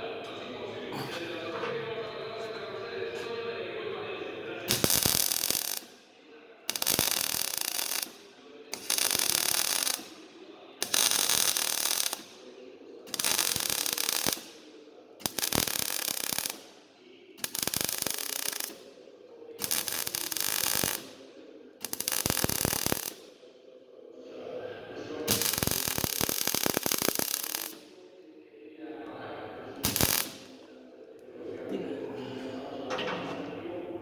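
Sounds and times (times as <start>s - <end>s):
welding arc crackle: 4.7s - 5.9s, 6.7s - 10.2s, 10.8s - 12.4s, 13.1s - 14.6s, 15.2s - 16.8s, 17.4s - 18.9s, 19.6s - 21.2s, 21.8s - 23.2s, 25.3s - 27.8s, 29.8s - 30.5s.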